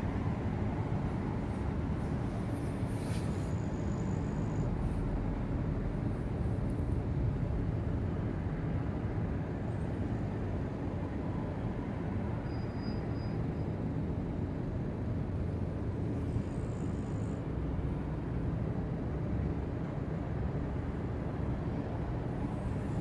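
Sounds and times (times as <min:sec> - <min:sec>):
pet snoring: 0:16.2 - 0:17.5.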